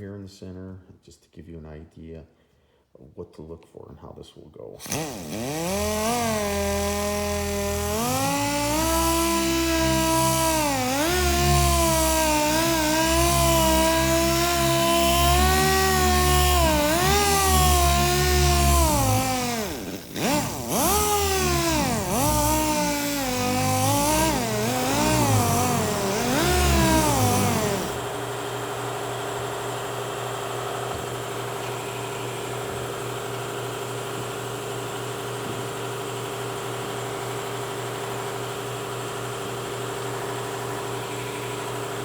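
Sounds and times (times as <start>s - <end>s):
sander wet-sanding: 4.8s - 28.2s, 30.6s - 42.0s.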